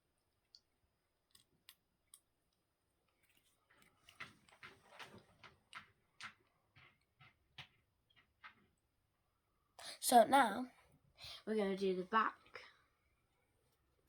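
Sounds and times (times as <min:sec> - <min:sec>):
faint clicks and taps: 0:01.3 - 0:09.0.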